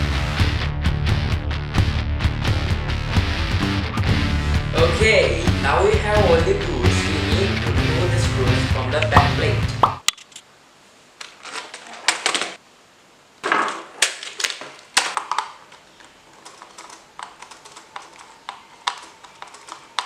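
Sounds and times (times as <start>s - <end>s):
plastic keyboard clicks and clatter: 14.0s - 20.0s.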